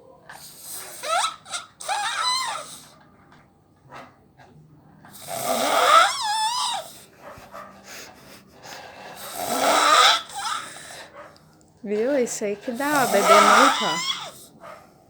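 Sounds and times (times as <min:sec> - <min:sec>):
man snoring heavily: 0:05.1 - 0:06.9, 0:08.8 - 0:11.1, 0:12.7 - 0:14.5
quiet breaths: 0:10.4 - 0:15.0.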